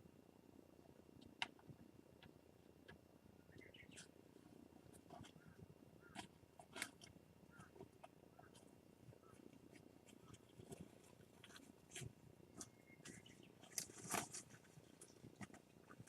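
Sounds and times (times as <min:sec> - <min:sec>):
owls scratching and rustling: 0:03.6 - 0:16.0.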